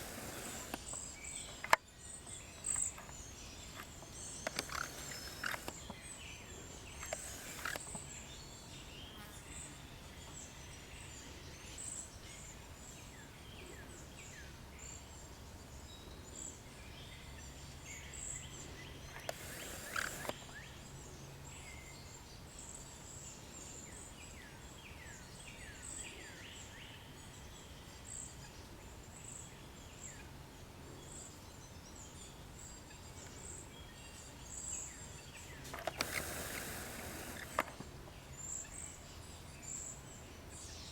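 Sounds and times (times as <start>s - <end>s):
noise bursts: 0.0s - 0.9s, 4.4s - 5.9s, 7.0s - 7.9s, 19.2s - 20.3s, 35.7s - 37.8s
songbirds calling: 0.0s - 40.9s.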